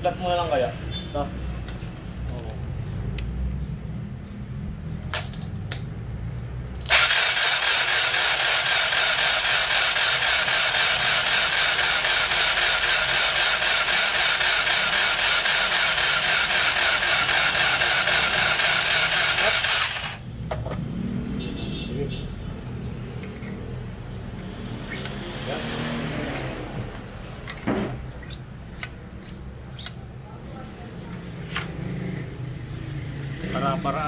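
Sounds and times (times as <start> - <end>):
power grinder grinding metal: 6.9 - 20.2.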